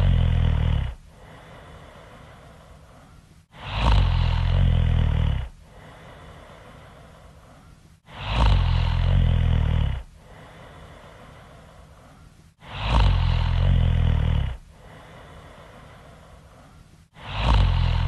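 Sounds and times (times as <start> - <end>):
loud rough snoring: 0.0 - 1.4, 3.5 - 6.3, 8.0 - 10.7, 12.6 - 15.6, 17.2 - 18.0
quiet breathing: 0.0 - 18.0.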